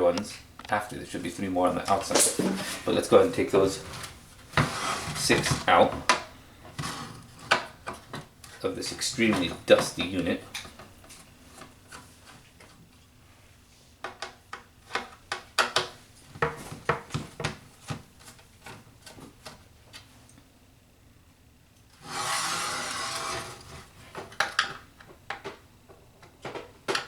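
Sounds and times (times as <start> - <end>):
loud steady rasping noise: 22.0 - 23.9.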